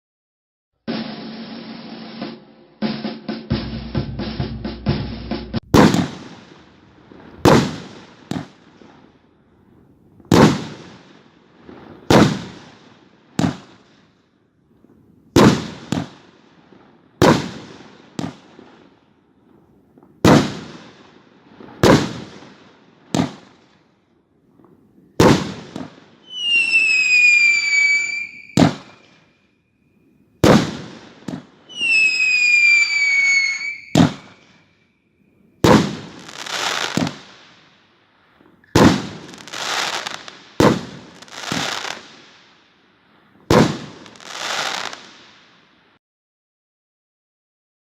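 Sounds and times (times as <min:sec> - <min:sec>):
firework bangs: 0:05.6 - 0:14.0, 0:15.3 - 0:23.8, 0:24.6 - 0:29.3, 0:30.4 - 0:34.8, 0:35.6 - 0:37.8, 0:38.4 - 0:42.5, 0:43.4 - 0:45.6
falling firework whistles: 0:25.1 - 0:37.5, 0:38.6 - 0:42.4, 0:43.5 - 0:45.3.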